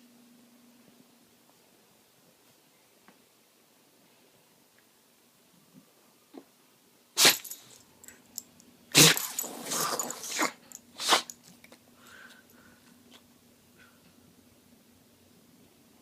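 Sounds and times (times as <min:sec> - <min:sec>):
dog sneezing: 0:07.2 - 0:07.7, 0:08.9 - 0:11.4.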